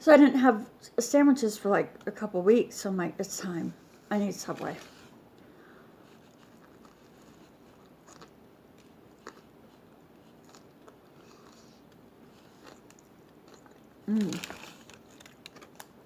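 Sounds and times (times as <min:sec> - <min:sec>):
faint chewing: 0:05.4 - 0:16.0.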